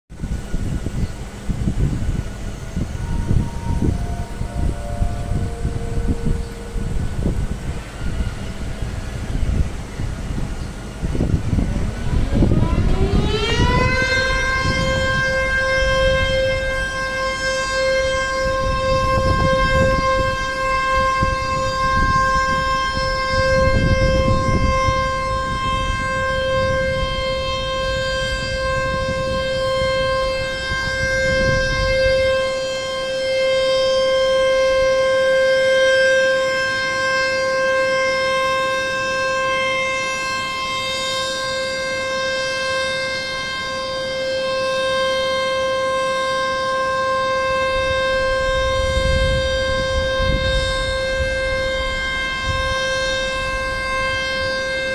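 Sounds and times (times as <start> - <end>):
gusty low rumble: 0.1 - 35.1, 47.7 - 54.9
warning siren steady tone: 0.1 - 54.9.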